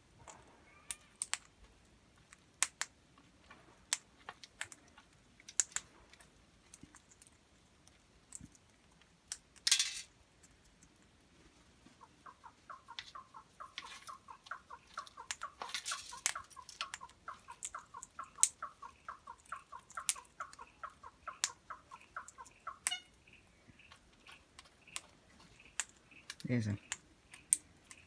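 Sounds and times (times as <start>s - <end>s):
bird calling harsh notes: 12.0s - 27.5s
sharp clicks: 12.8s - 23.1s.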